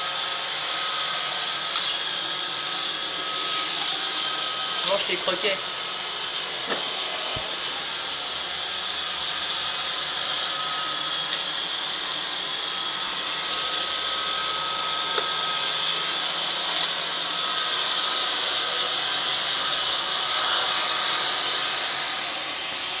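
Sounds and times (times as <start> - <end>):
robot vacuum whirring: 0.0 - 23.0.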